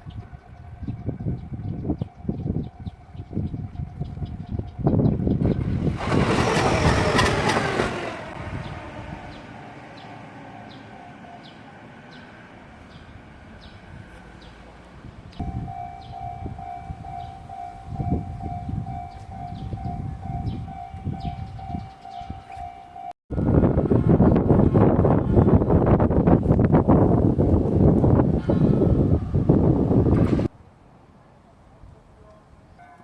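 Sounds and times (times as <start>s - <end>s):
low rumbling of train: 0.0s - 33.0s
crossing warning bell ringing: 0.4s - 5.0s, 9.2s - 12.3s, 15.4s - 23.2s.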